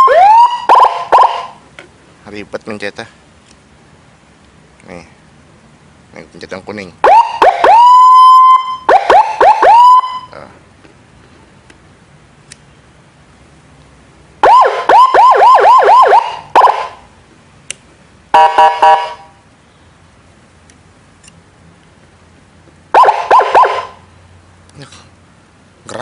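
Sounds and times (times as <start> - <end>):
electronic siren whooping: 0.0 - 1.6, 7.0 - 10.4, 14.4 - 17.0, 22.9 - 24.0.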